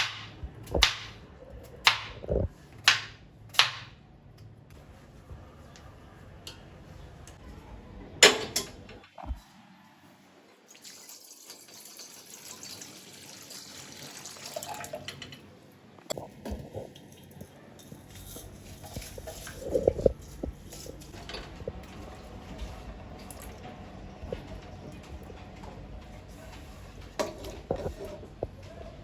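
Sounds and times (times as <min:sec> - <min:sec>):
water running from tap: 0:10.7 - 0:15.1.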